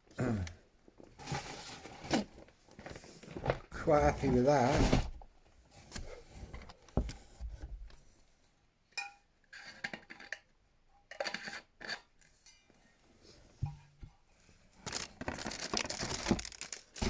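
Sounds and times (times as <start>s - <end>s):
packaging rustling: 14.8s - 17.0s.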